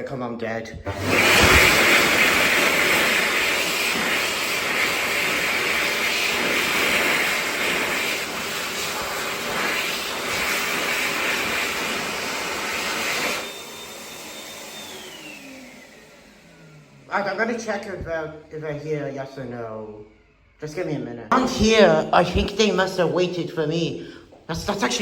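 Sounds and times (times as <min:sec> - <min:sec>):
hand dryer blowing: 0:00.7 - 0:18.4, 0:21.3 - 0:23.4, 0:24.0 - 0:25.0
motor whine running down: 0:00.9 - 0:18.2.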